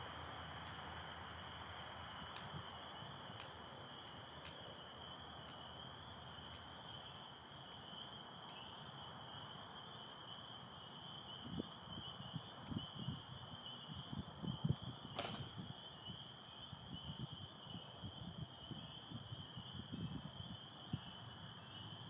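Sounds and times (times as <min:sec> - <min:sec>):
spring peepers chorus: 0:00.0 - 0:22.0
faint clicks: 0:02.3 - 0:05.7.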